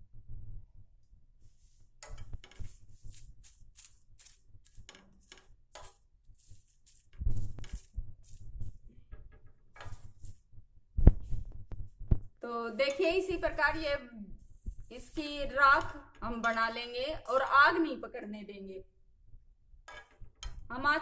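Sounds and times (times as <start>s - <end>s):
scraping on pan: 2.0s - 10.4s
dry leaves crackling on hot pan: 2.4s - 8.8s.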